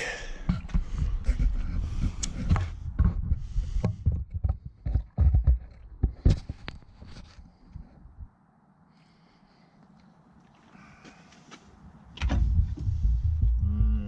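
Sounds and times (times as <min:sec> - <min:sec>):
low rumbling handling noise: 0:12.1 - 0:14.0
engine cover clunks and rattles: 0:12.2 - 0:13.6.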